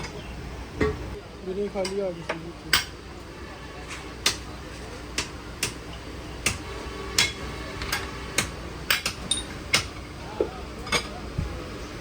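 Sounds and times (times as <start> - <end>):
low workshop hum: 0.0 - 12.0
hammer striking metal: 6.4 - 10.0.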